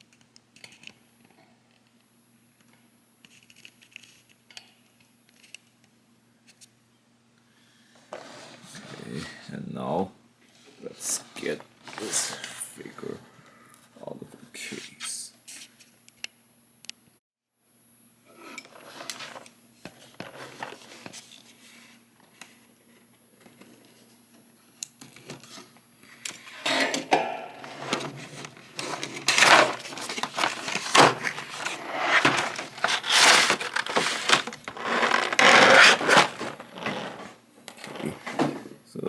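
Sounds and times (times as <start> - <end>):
plastic crinkling and rustling: 27.6 - 38.6
cardboard box scraping: 27.6 - 38.7.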